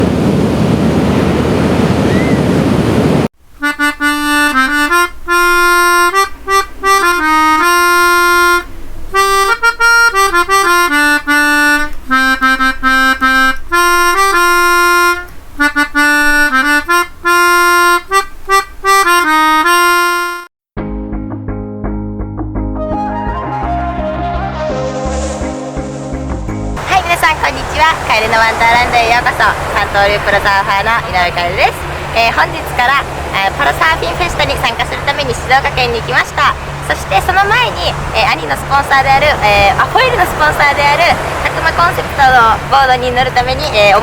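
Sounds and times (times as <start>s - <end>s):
reedy held-note melody: 3.6s - 20.5s
loud rushing noise: 24.4s - 44.0s.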